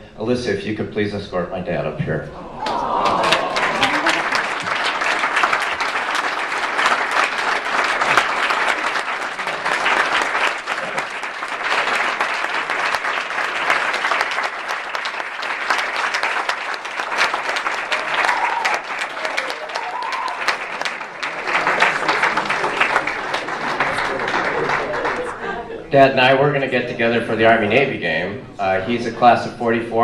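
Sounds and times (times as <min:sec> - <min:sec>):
audience applauding: 0:02.5 - 0:25.8.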